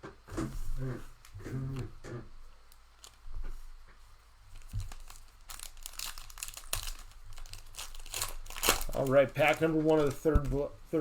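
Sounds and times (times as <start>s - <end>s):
plastic wrapping crinkling and tearing: 2.7s - 3.7s, 4.4s - 10.8s.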